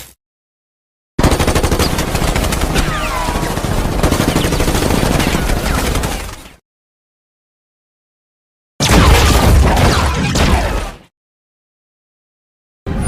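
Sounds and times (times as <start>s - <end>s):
rapid automatic gunfire: 1.2s - 6.6s.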